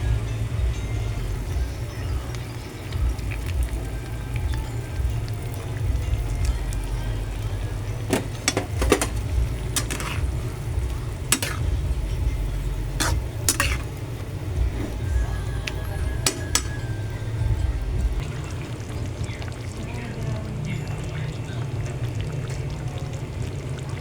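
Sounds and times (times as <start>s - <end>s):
steady low rumble: 0.0s - 20.4s
utensil clinking against a pot: 4.3s - 17.0s.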